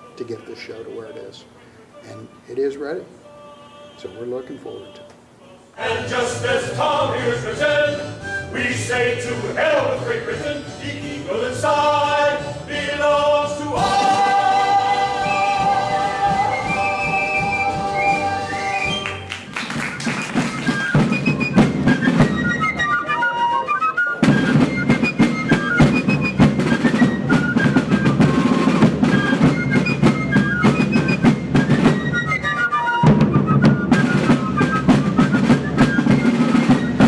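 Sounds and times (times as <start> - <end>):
high flute melody: 7.8 - 9.2, 13.8 - 37.0
rapid drum strikes: 13.8 - 17.9, 19.5 - 23.1, 24.2 - 37.0.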